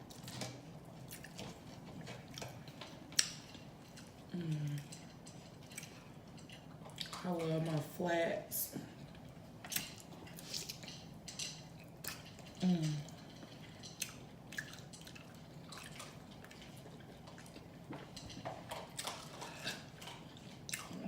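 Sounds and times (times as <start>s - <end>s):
mouth smacking and chewing: 11.7s - 21.0s
person humming: 12.6s - 13.1s.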